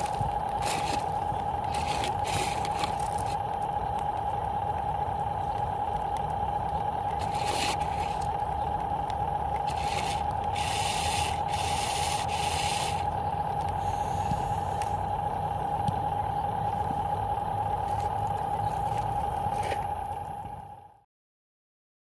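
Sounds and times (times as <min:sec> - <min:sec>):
gritty scraping hiss: 0:00.0 - 0:01.1
model motor whining: 0:00.0 - 0:03.7, 0:05.6 - 0:20.8.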